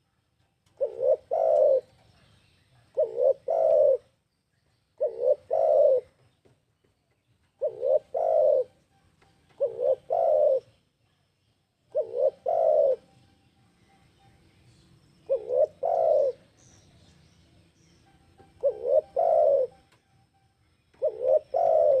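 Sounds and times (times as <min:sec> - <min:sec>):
dove cooing: 0:00.6 - 0:02.2, 0:02.8 - 0:04.1, 0:05.0 - 0:06.2, 0:07.6 - 0:08.8, 0:09.5 - 0:10.8, 0:11.9 - 0:13.2, 0:15.2 - 0:16.8, 0:18.4 - 0:19.9, 0:20.9 - 0:22.0.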